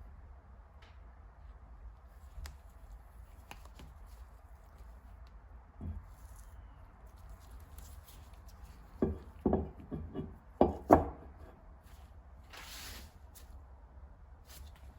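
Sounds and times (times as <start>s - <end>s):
light knocks and taps: 9.0s - 11.2s.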